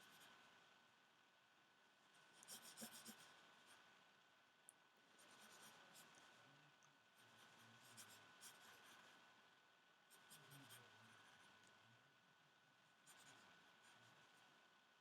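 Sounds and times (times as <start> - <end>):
pencil scratching on paper: 2.4 - 3.3, 5.2 - 6.2, 7.4 - 9.0, 13.0 - 14.1.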